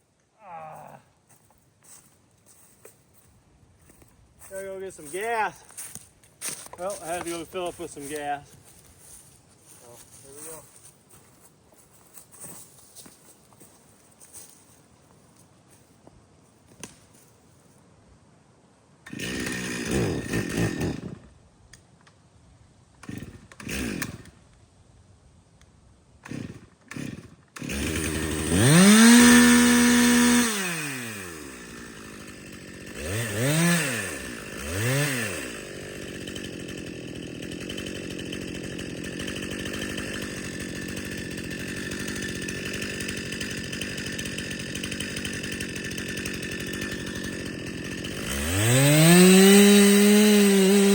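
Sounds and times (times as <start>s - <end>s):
chainsaw engine revving and idling: 2.5s - 10.8s, 19.1s - 21.3s, 23.0s - 24.4s, 26.2s - 50.9s
chainsaw starter cord pulls: 19.1s - 21.3s, 23.0s - 24.4s, 26.2s - 50.9s.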